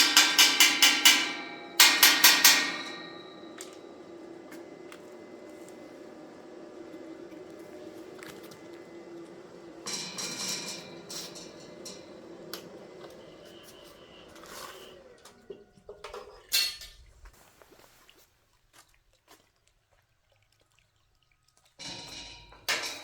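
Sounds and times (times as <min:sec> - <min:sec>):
loud metallic clank: 0:00.0 - 0:03.7, 0:09.8 - 0:12.1, 0:21.9 - 0:23.0
steady hum: 0:00.0 - 0:16.1.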